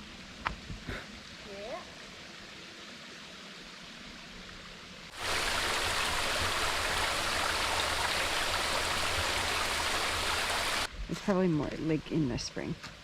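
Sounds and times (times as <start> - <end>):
rush of falling water: 0.0 - 13.0
water hissing: 5.1 - 11.2.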